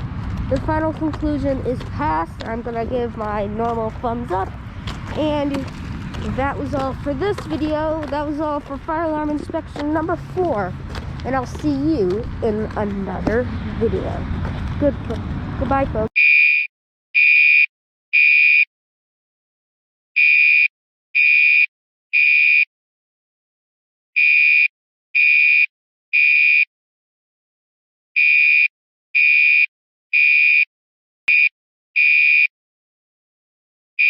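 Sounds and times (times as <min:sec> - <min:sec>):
fire alarm beeping: 0:31.3 - 0:32.5.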